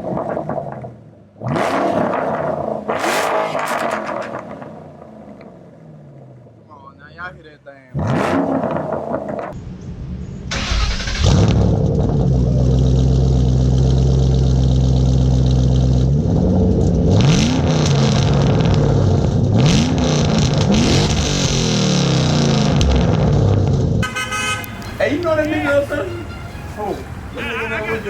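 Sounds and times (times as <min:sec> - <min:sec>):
loud car exhaust revving: 0:00.0 - 0:06.7, 0:07.9 - 0:25.6.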